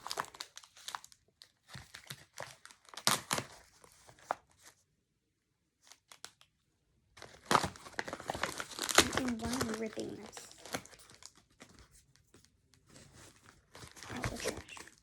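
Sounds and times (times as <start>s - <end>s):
paper ripping and crumpling: 7.2s - 11.8s, 12.9s - 15.0s.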